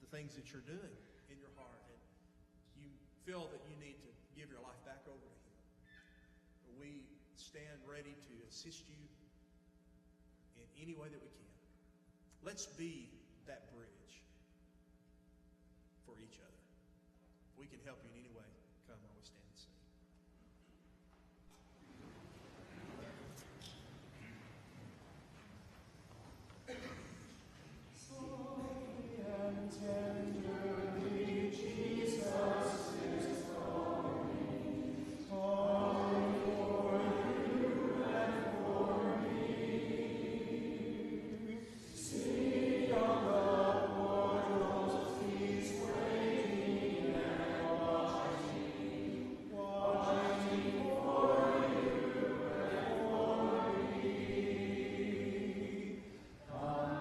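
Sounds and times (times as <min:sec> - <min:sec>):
congregation singing a hymn: 0:26.7 - 0:57.0.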